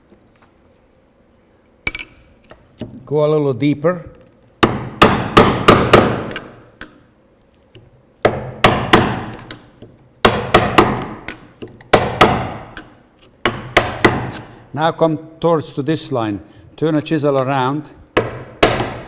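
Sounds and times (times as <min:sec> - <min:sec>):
mallet striking chisel into wood: 0:04.6 - 0:07.0, 0:08.2 - 0:14.5, 0:18.2 - 0:19.0.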